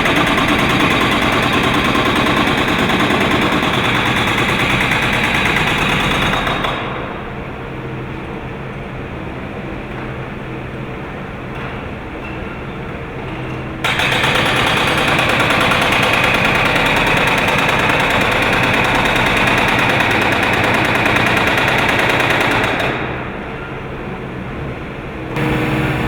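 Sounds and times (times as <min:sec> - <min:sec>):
hydraulic breaker hammering: 0:00.0 - 0:07.2, 0:13.8 - 0:23.5, 0:25.4 - 0:26.0
excavator engine running: 0:24.4 - 0:26.0.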